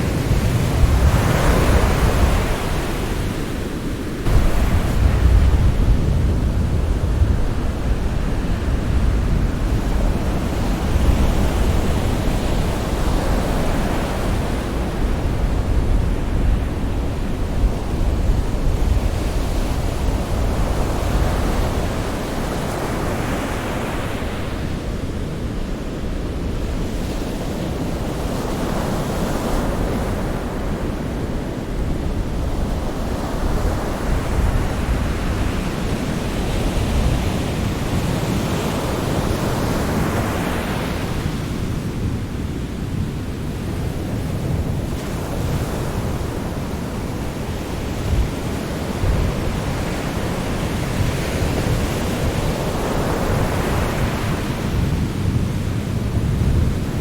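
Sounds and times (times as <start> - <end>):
waves washing: 0.0 - 15.7.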